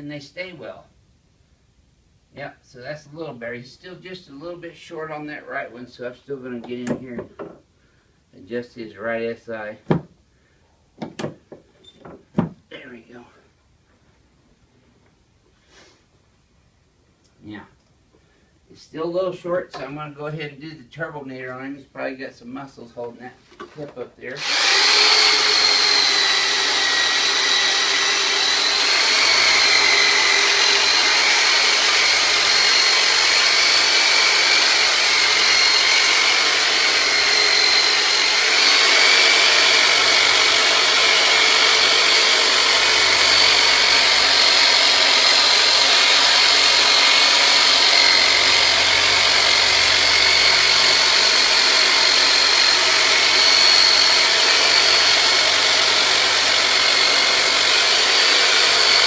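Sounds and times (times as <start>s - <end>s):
electric massager motor whine: 24.4s - 59.0s.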